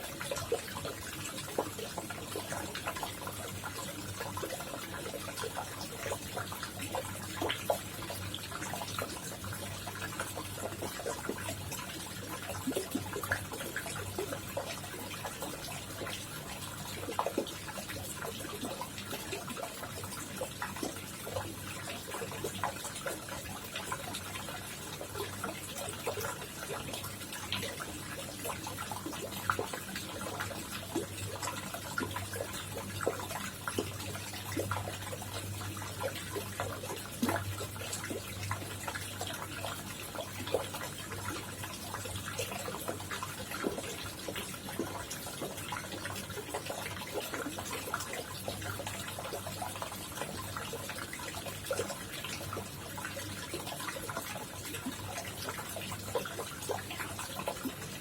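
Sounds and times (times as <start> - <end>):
water drips and plops: 0.0 - 58.0
water trickling and splashing: 0.0 - 58.0.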